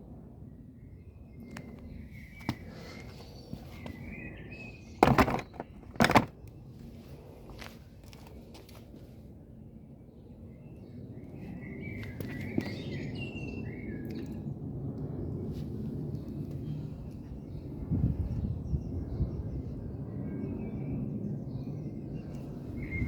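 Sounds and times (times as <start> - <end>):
loud knocks: 5.0 - 6.3.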